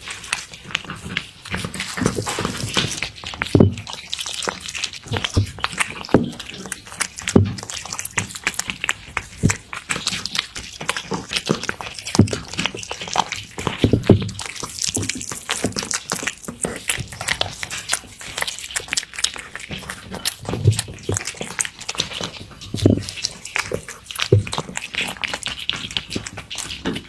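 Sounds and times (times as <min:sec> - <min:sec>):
cat chewing wet food: 0:00.0 - 0:27.0.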